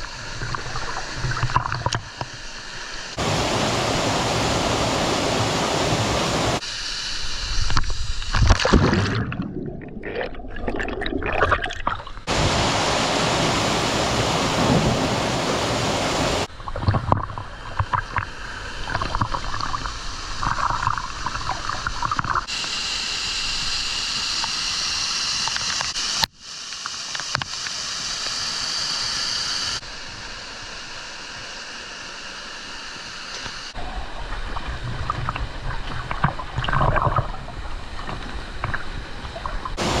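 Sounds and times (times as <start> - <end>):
waterfall rushing: 3.2 - 6.6, 12.3 - 16.5, 39.8 - 40.0.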